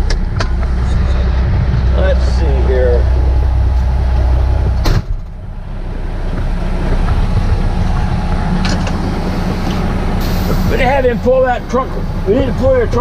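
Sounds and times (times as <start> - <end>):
heavy vehicle engine idling: 0.0 - 13.0
sharp thump: 4.6 - 5.4.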